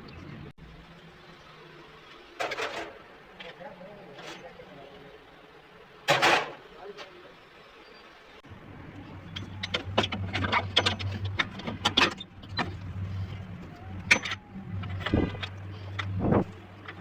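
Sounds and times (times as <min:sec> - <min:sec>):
car engine idling: 0:08.4 - 0:17.0
metallic clicks and knocks: 0:09.0 - 0:13.2, 0:13.8 - 0:17.0.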